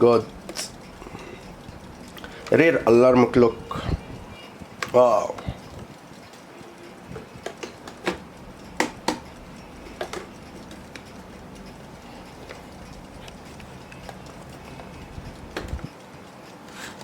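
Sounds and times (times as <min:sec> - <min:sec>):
alarm clock clicks and knocks: 0:04.6 - 0:17.0.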